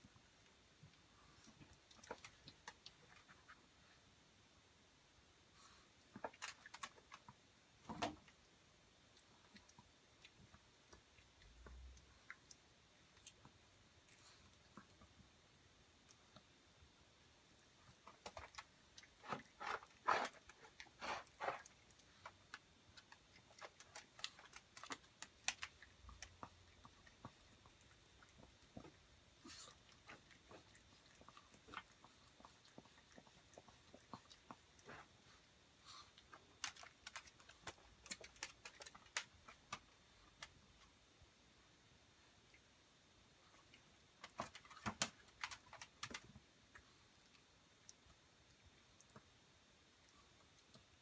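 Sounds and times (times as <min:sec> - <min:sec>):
dog chewing food crunches: 0:18.1 - 0:35.0, 0:36.4 - 0:40.6.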